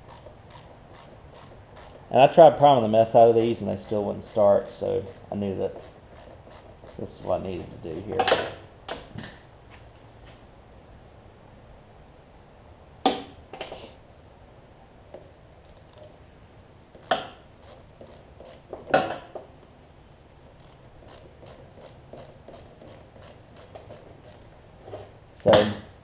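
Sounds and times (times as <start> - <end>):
ratcheting wrench clicking: 0.0 - 8.4, 15.6 - 16.2, 17.0 - 19.0, 20.6 - 24.6
metal tools knocking: 0.0 - 8.6.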